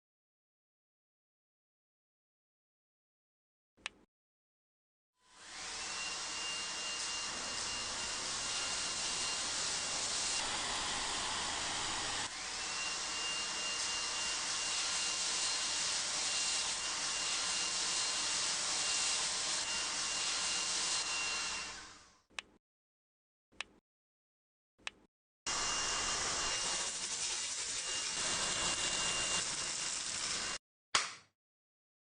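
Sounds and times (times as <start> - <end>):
handheld vacuum cleaner whining: 5.2 - 22.2, 25.5 - 30.6.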